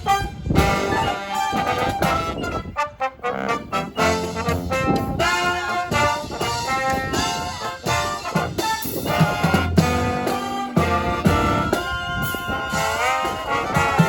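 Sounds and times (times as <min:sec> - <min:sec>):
brass band playing: 0:00.0 - 0:14.0.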